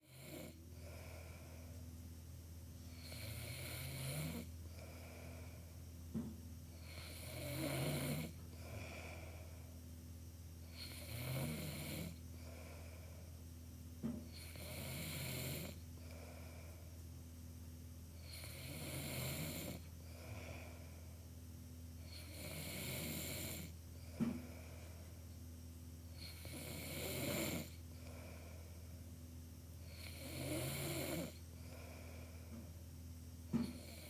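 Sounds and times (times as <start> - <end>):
steady low hum: 0.0 - 34.0
person snoring: 2.9 - 5.1, 6.8 - 9.3, 10.7 - 12.2, 14.3 - 16.2, 18.2 - 20.8, 22.1 - 23.7, 26.2 - 28.3, 29.9 - 32.1.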